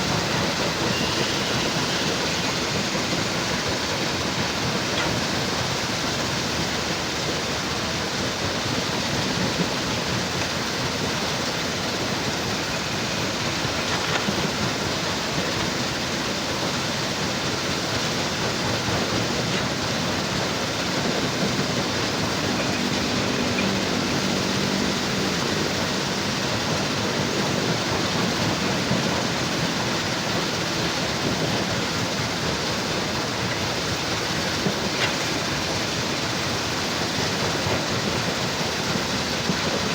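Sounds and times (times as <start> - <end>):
heavy machinery rushing noise: 0.0 - 39.9
faint engine hum: 18.4 - 32.6.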